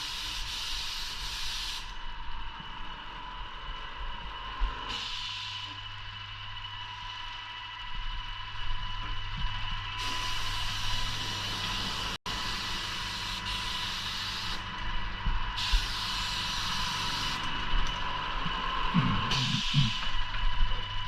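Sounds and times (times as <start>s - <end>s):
machine whine and hum: 0.0s - 21.0s
paint spray gun hissing: 10.0s - 14.6s, 15.6s - 17.4s.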